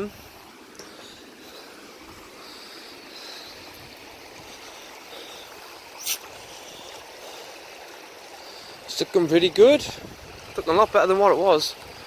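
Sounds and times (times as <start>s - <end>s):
river water flowing: 0.0s - 12.0s
sharp hiss: 6.0s - 6.6s.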